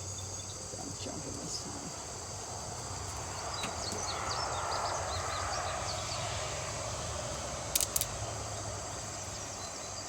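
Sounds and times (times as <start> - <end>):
crickets chirping: 0.0 - 10.0.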